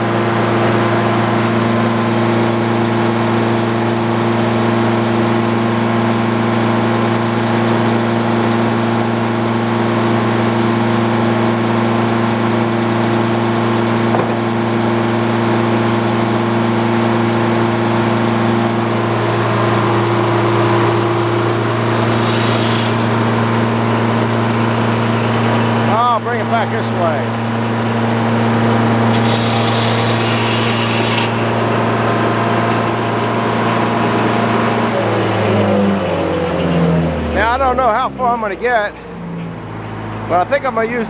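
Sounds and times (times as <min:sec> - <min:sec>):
motor humming: 0:17.0 - 0:25.9, 0:27.2 - 0:35.8.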